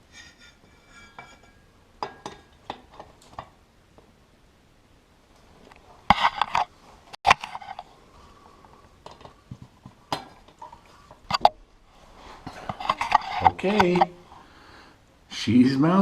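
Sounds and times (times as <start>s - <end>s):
faint metallic ring: 0.0s - 2.6s
metal and wood parts clattering: 0.0s - 3.6s.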